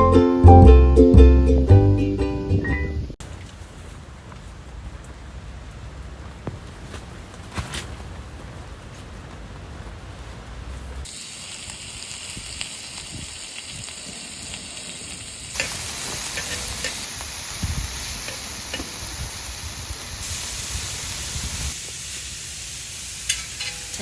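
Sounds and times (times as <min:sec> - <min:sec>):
steady high hiss: 0:11.0 - 0:24.0
small crackles and pops: 0:11.1 - 0:20.1.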